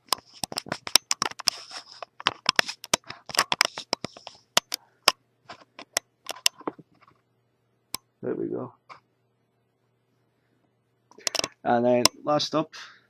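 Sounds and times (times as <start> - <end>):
handling clicks and taps: 0.0 - 7.1.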